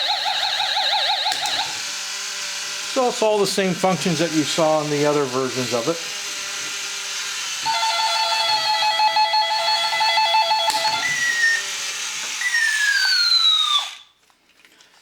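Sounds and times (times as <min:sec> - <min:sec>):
toy motor whirring: 0:00.0 - 0:14.1.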